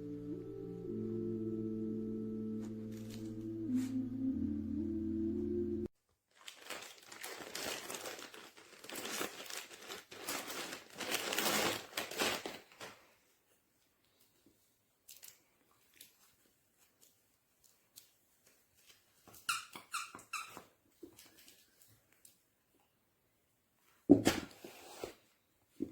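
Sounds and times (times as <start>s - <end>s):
music: 0.0s - 5.9s
crinkling and crumpling: 6.2s - 19.5s, 20.3s - 22.5s.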